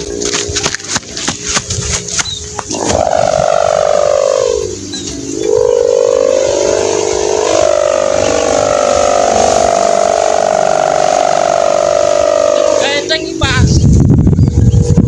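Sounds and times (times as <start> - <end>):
kite hummer droning in wind: 0.0 - 15.0.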